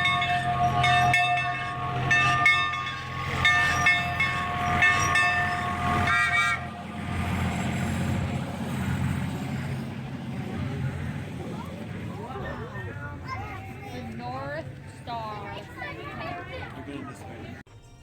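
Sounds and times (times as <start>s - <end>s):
bell ringing: 0.0s - 8.4s.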